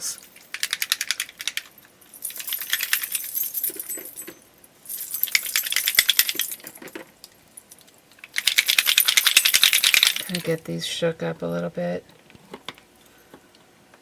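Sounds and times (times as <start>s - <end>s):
paint bottles rattling when shaken: 8.2s - 10.6s.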